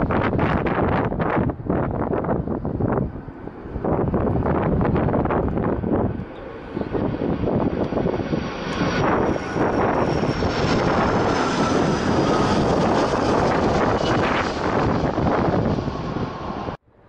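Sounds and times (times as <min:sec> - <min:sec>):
wind buffeting microphone: 0:00.0 - 0:16.8
airliner engines running: 0:00.0 - 0:17.0.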